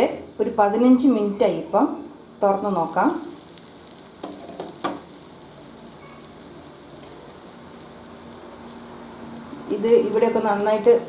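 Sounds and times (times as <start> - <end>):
omelette sizzling in oil: 2.2 - 11.0.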